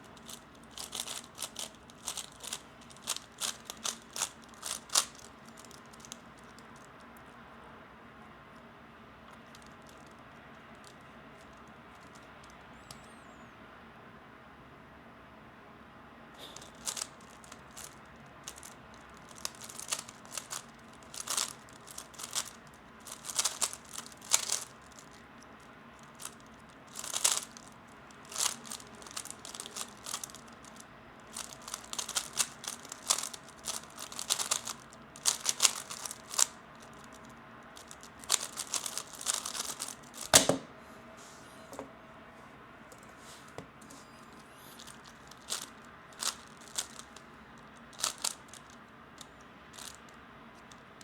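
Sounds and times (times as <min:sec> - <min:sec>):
puzzle cube plastic clicking: 0:00.0 - 0:06.9, 0:16.4 - 0:25.3, 0:26.0 - 0:37.2, 0:37.8 - 0:40.6, 0:44.8 - 0:47.2, 0:47.9 - 0:50.8.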